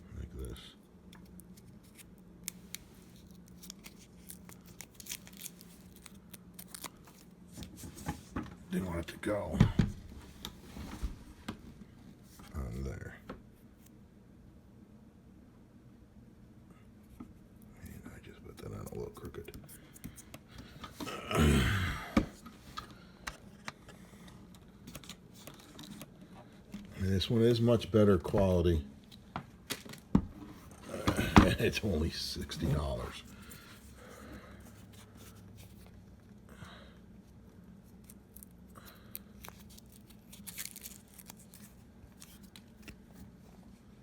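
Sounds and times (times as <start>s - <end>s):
adhesive pads peeling and pressing: 1.1s - 7.3s
low grunt: 21.0s - 22.3s.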